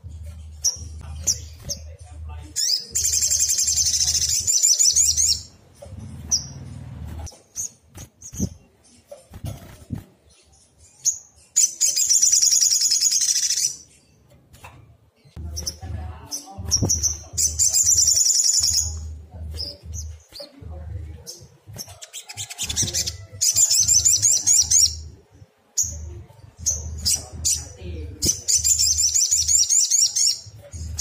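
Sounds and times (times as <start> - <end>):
bird singing high trills: 16.7 - 19.1.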